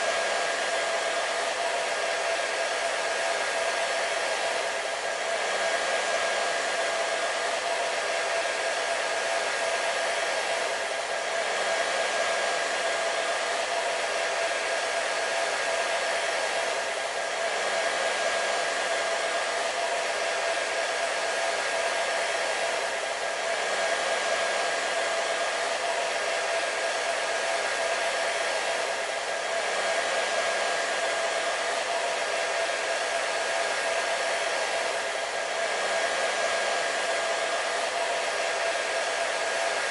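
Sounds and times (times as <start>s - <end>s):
hair dryer running: 0.0s - 39.9s.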